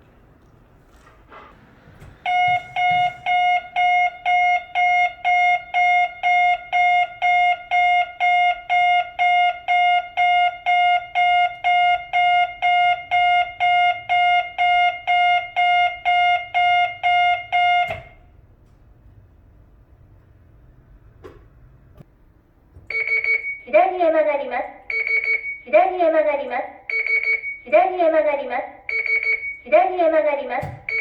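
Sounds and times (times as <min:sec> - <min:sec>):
reversing buzzer pulsing: 0:02.2 - 0:05.5.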